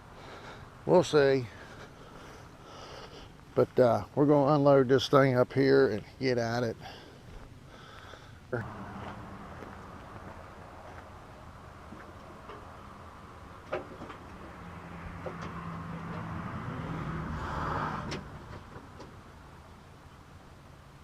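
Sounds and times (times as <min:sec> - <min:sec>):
backhoe engine revving: 0:08.6 - 0:18.9.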